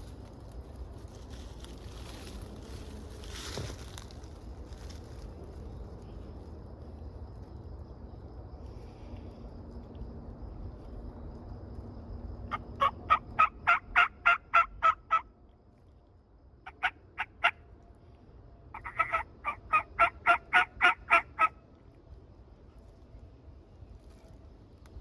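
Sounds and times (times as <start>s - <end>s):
turkey yelping: 12.5s - 15.2s, 16.7s - 17.6s, 18.8s - 21.6s.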